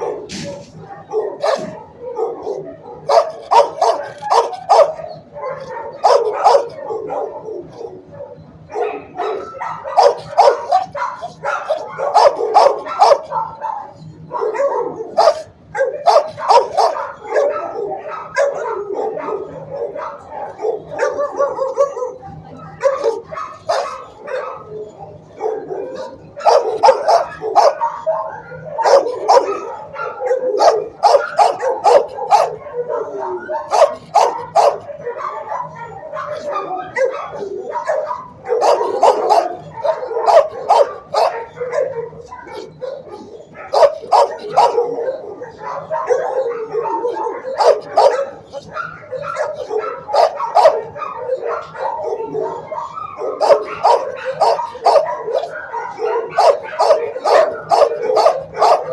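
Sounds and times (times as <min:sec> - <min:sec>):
dogs barking and yipping: 0:00.0 - 0:58.9.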